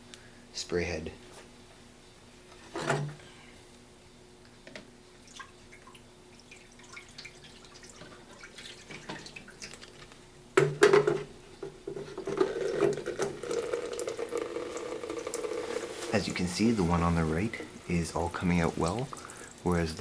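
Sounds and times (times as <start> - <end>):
water dripping: 5.2 - 10.7, 12.6 - 20.0.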